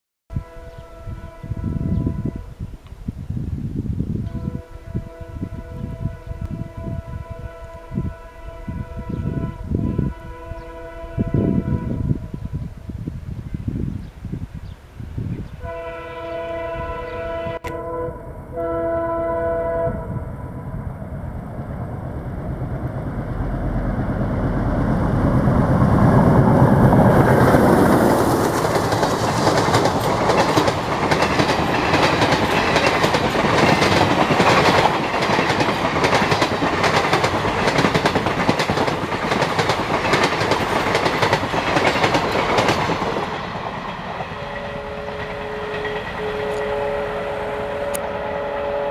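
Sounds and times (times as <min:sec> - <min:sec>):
locomotive horn: 0:00.3 - 0:02.6, 0:04.3 - 0:12.6, 0:15.6 - 0:20.8, 0:44.3 - 0:48.9
wheels clacking over rail joints: 0:22.5 - 0:46.8.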